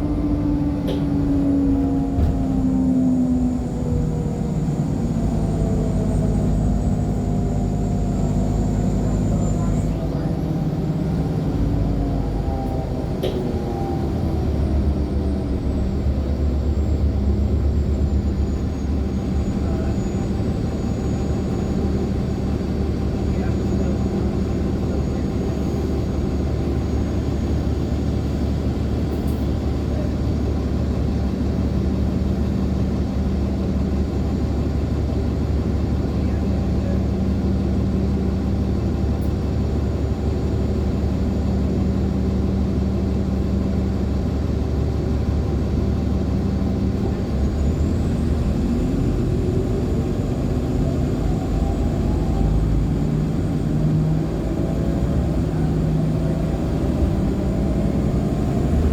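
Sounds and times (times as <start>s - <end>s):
rising whine: 0.0s - 9.8s
bus engine drone: 0.0s - 58.9s.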